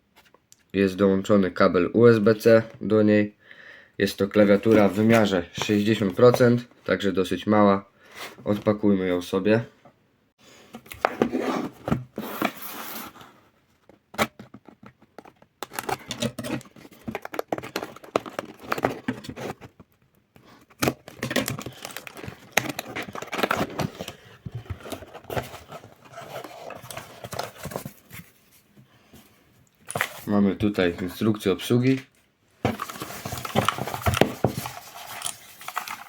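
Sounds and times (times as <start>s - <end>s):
clicks and scrapes: 13.8s - 28.4s, 32.7s - 36.0s
packaging rustling and crinkling: 14.2s - 28.7s, 29.8s - 30.4s, 32.6s - 36.0s.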